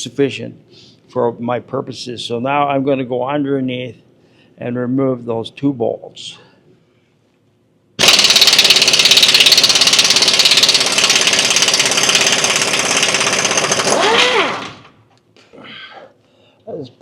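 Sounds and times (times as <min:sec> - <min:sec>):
impact wrench hammering: 0:08.0 - 0:15.0.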